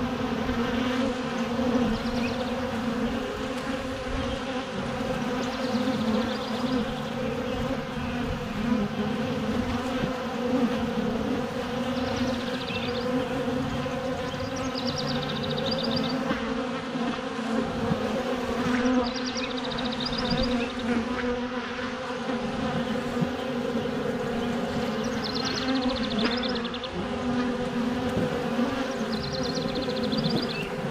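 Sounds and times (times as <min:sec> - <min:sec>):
honeybees buzzing: 0:00.0 - 0:30.9.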